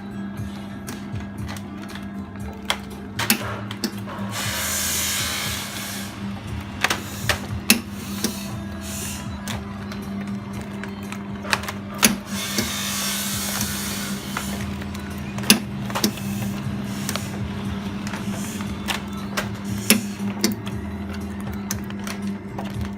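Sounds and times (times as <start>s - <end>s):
sealer motor hum: 0.0s - 22.9s
plastic bags hissing and rustling: 4.1s - 20.4s.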